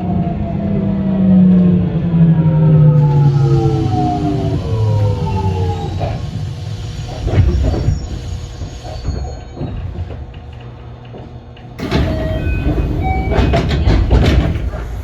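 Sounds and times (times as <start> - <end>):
train carriage rumbling: 0.0 - 15.0
wheel knocks over rail joints: 11.1 - 15.0.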